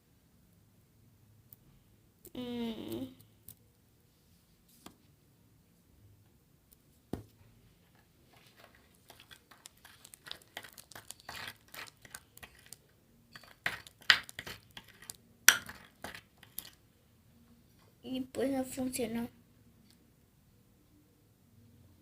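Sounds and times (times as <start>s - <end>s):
slime crackling and tearing: 9.2s - 12.8s.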